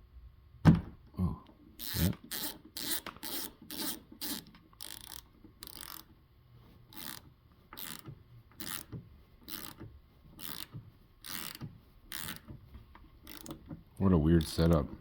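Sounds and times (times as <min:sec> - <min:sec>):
screwdriver ratcheting clicks: 0:01.8 - 0:06.1, 0:06.9 - 0:07.2, 0:07.8 - 0:09.8, 0:10.4 - 0:12.5, 0:13.2 - 0:13.6.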